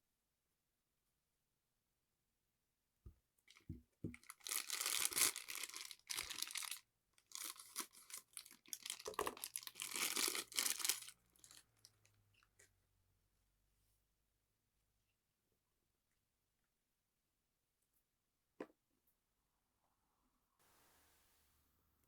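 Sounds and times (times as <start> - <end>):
plastic packaging crinkling: 4.1 - 11.6.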